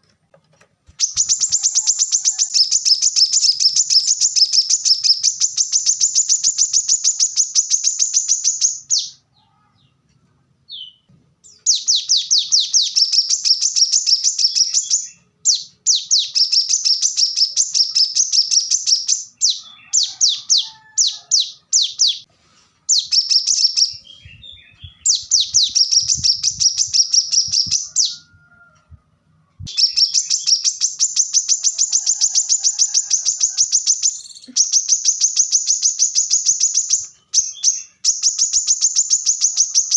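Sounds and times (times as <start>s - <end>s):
sunbird chattering song: 1.0s - 9.2s.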